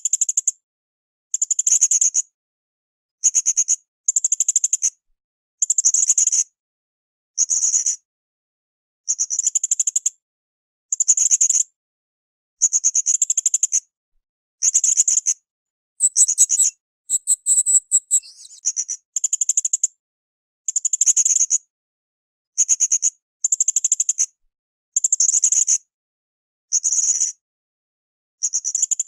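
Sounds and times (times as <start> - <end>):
parrot high pulsed trills: 16.0 - 18.6.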